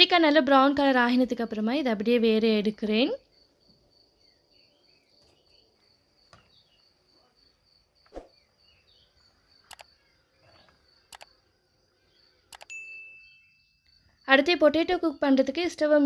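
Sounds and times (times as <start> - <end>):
cricket chirring: 2.2 - 15.7
soft clicks: 9.6 - 10.0, 11.1 - 11.4, 12.5 - 12.8.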